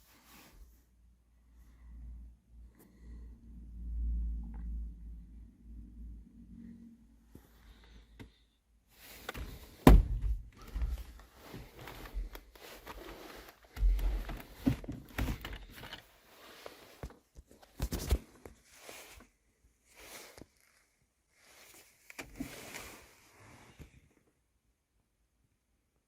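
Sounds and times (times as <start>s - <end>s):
knocks and thuds: 9.3s - 11.2s.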